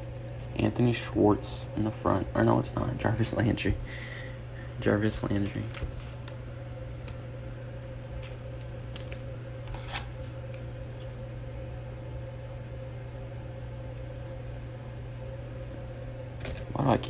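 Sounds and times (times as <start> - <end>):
steady low hum: 0.0 - 17.0
cards and plastic holders handled: 5.2 - 7.2.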